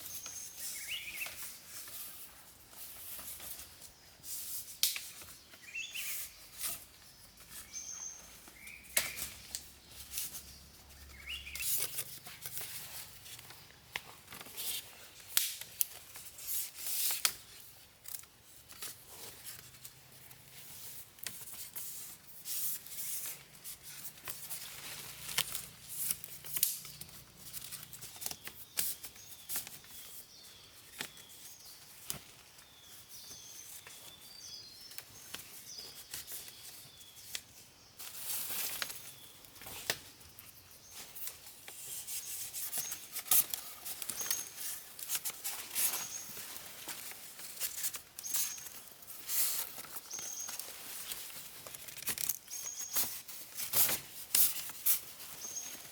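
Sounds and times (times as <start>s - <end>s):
scraping and snapping plant material: 4.6s - 6.9s, 8.5s - 10.5s, 11.1s - 20.0s, 22.6s - 30.0s, 41.0s - 55.9s.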